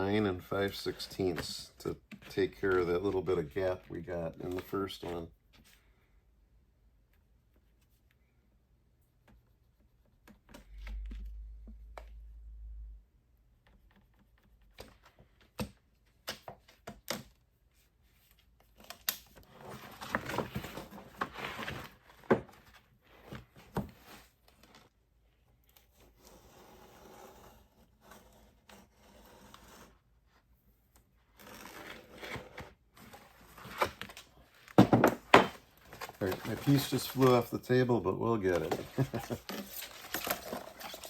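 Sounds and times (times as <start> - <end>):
scraping on plastic film: 35.6 - 37.5, 38.5 - 41.0.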